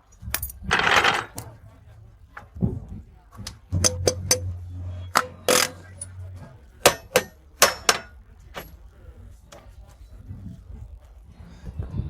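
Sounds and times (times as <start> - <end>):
metal scraping: 0.0 - 8.8
low hum: 1.4 - 12.0
sharp metallic clicks and knocks: 3.3 - 8.8.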